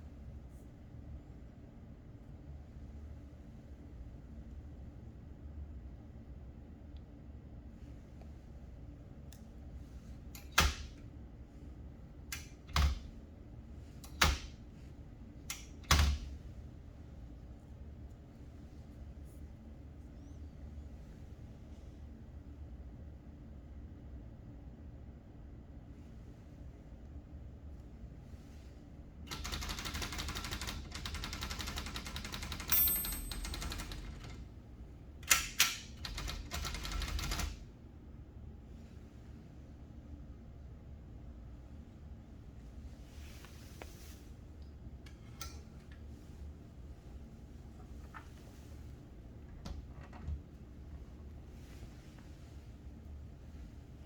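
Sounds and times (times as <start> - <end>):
typewriter clacks: 29.3 - 34.4, 35.3 - 37.6
typewriter bell ding: 32.2 - 34.3
faint typewriter click: 35.2 - 37.6.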